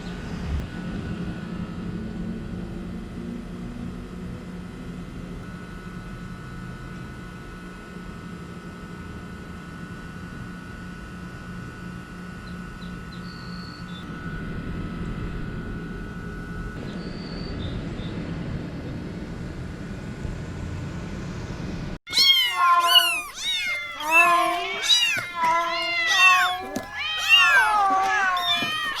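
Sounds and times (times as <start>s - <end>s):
cat meowing: 22.1s - 29.0s.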